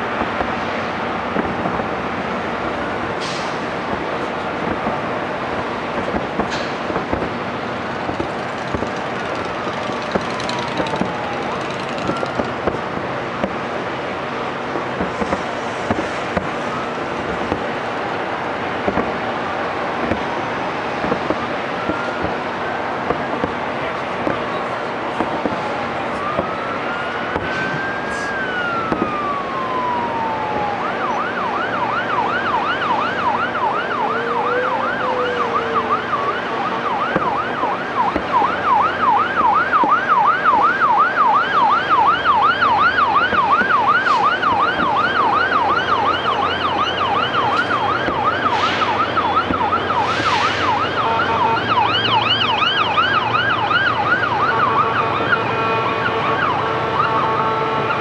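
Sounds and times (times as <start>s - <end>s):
emergency siren wailing and yelping: 0.0s - 58.0s
higher-pitched yelping siren: 8.1s - 12.7s, 26.1s - 58.0s.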